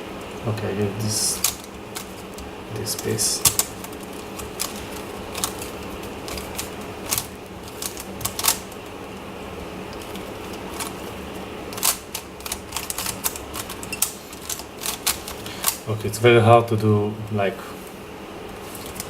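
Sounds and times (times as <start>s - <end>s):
puzzle cube clicking: 3.0s - 8.7s, 11.7s - 15.8s.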